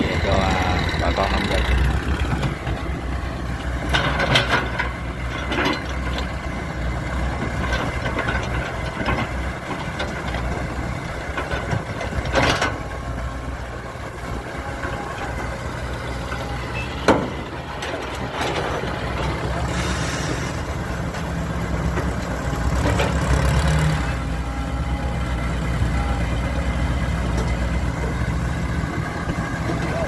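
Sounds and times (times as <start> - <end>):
heavy machinery engine idling: 0.0 - 30.0
metallic clanks and knocks: 3.6 - 6.6, 7.4 - 13.0, 16.2 - 19.6.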